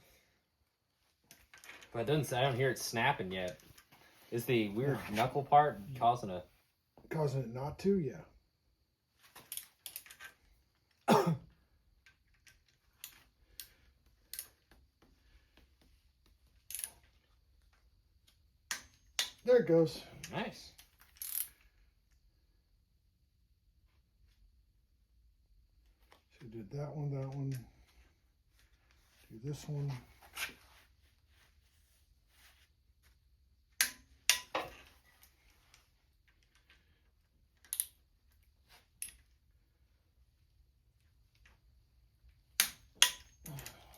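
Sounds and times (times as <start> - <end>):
man coughing: 11.0 - 11.5.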